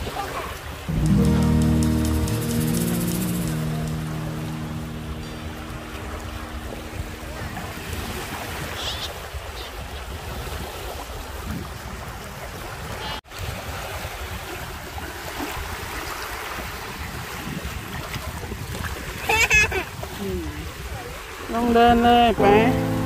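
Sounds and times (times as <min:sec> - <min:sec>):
small waves washing on shore: 0:00.0 - 0:23.0
wind buffeting microphone: 0:00.0 - 0:23.0.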